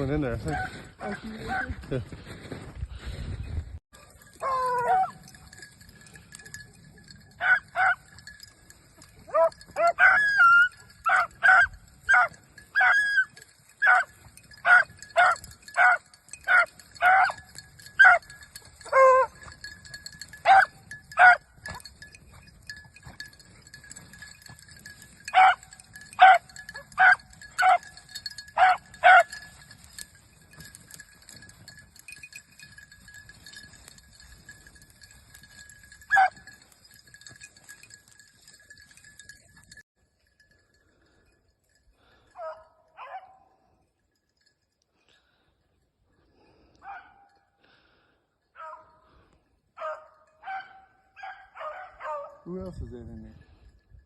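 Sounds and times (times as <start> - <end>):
dogs barking and bawling: 4.0 - 8.4, 9.1 - 22.0, 22.7 - 29.6, 36.0 - 36.6, 49.8 - 52.4.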